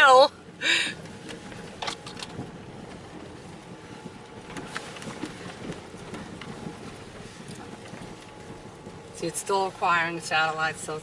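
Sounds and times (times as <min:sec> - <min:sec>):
car engine and road noise: 0:00.0 - 0:11.0
light knocks and crunches: 0:01.1 - 0:09.2.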